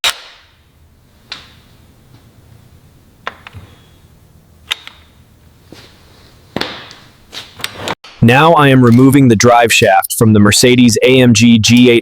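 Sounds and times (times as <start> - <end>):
sharp clicks and knocks: 1.3 - 1.7, 3.2 - 3.8, 4.6 - 5.2.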